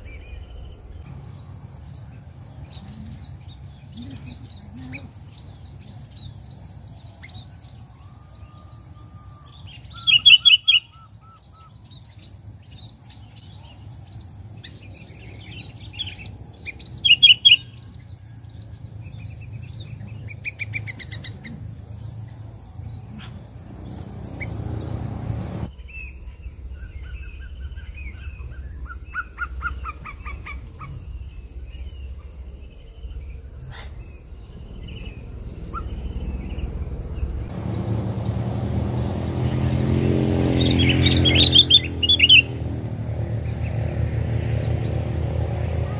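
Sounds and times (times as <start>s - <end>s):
small birds chirping: 0.0s - 45.9s
bird rapid trills: 1.1s - 25.7s, 37.5s - 45.9s.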